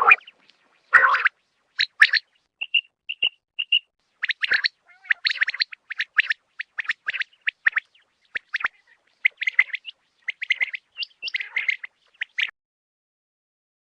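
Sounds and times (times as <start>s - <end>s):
quail chirping: 0.0s - 12.5s.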